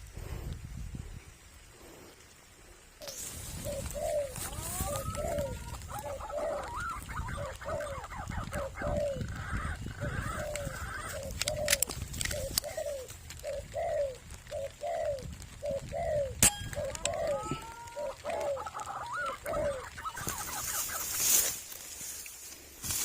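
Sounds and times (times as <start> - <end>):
bird calling in falling notes: 3.0 - 13.1, 16.3 - 21.6
sharp clicks: 10.5 - 13.4.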